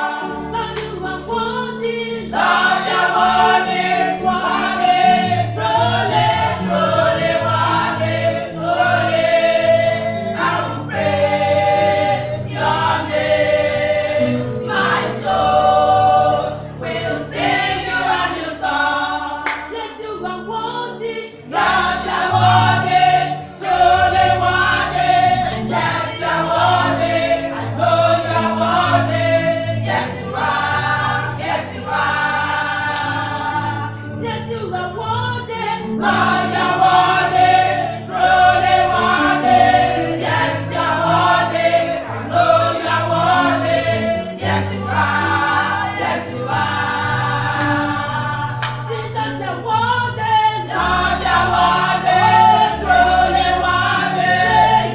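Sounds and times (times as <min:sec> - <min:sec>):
choir singing gospel: 0:00.0 - 0:54.9.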